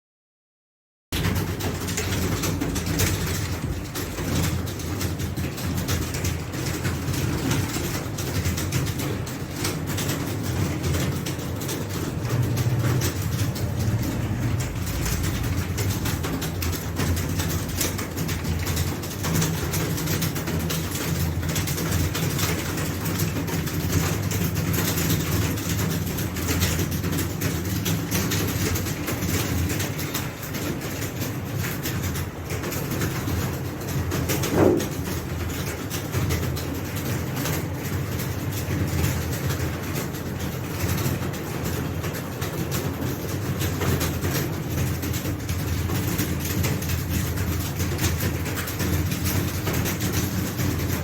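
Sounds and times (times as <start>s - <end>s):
keyboards clattering: 1.1s - 51.0s
low machine hum: 10.5s - 19.9s.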